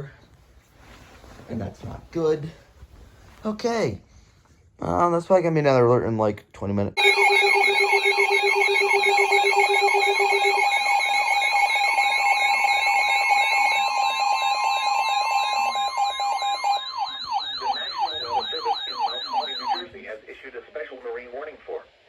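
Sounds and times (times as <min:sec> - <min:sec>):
steady beeping alarm tones: 0:07.0 - 0:19.9
fast warbling alarm tones: 0:07.0 - 0:20.0
siren sweeps: 0:07.0 - 0:20.0.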